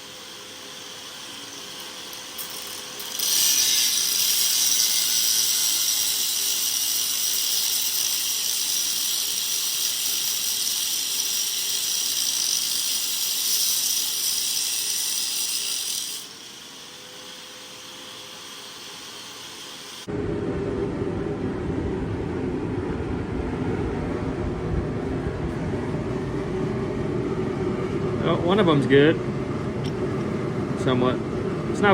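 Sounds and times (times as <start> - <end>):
angle grinder grinding metal: 0.0 - 20.1.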